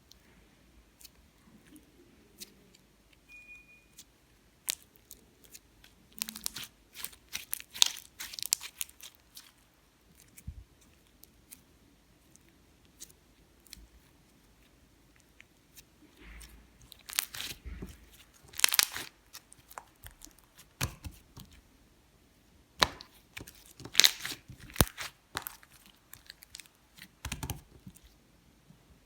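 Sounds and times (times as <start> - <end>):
slime sticky clicks and pops: 18.5 - 21.6, 22.8 - 25.6.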